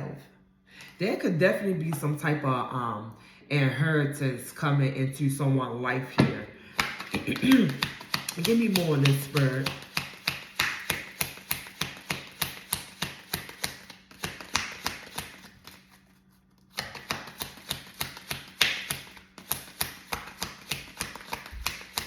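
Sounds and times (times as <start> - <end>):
cards being shuffled: 6.8 - 22.0.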